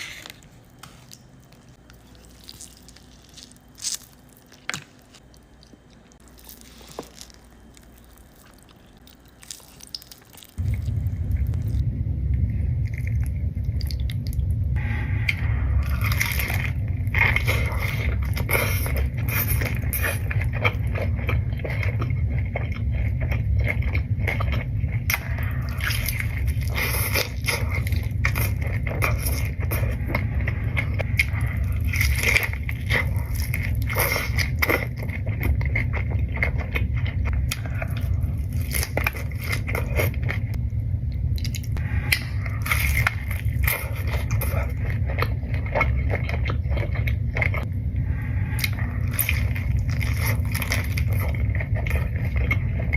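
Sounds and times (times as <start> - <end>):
crunchy bites and chewing: 0.0 - 11.9, 15.3 - 40.6, 48.4 - 52.9
low hum: 0.0 - 52.9.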